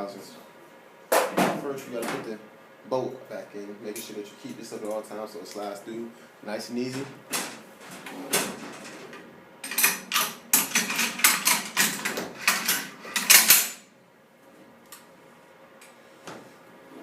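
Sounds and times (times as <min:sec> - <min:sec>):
metal-on-metal clacks and scraping: 0:09.6 - 0:13.8.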